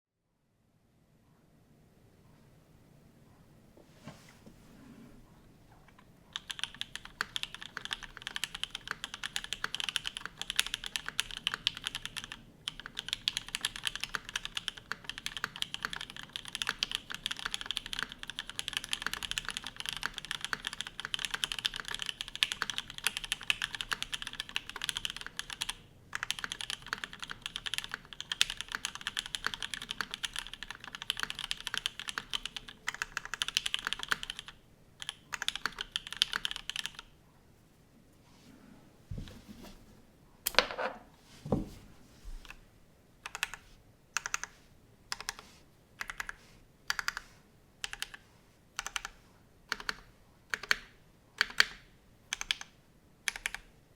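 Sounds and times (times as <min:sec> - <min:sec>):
fast typing on mechanical keyboard: 0:06.3 - 0:37.1, 0:43.3 - 0:43.6, 0:44.2 - 0:44.5, 0:45.1 - 0:45.4, 0:46.0 - 0:48.2, 0:48.8 - 0:53.7.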